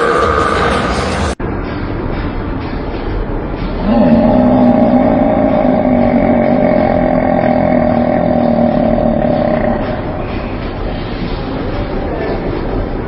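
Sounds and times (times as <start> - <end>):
loud roar-like belch: 3.8 - 10.8.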